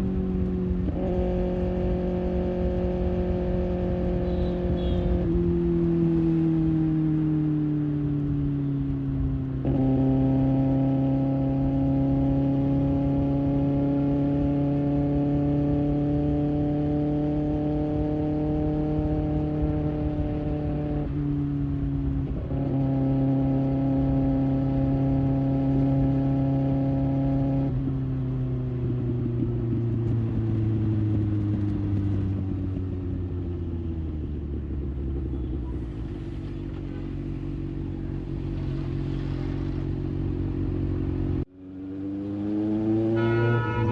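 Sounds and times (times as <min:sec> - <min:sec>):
motorcycle engine running: 0:23.9 - 0:43.9.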